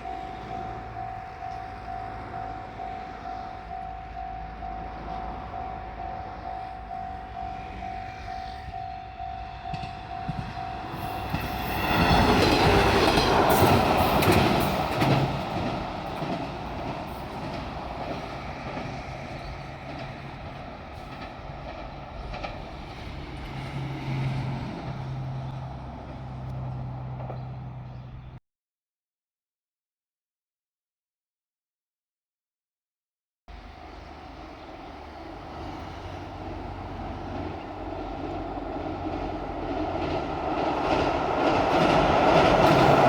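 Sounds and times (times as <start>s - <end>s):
level crossing bell: 0.0s - 12.6s
train passing: 0.0s - 28.4s, 33.5s - 43.0s.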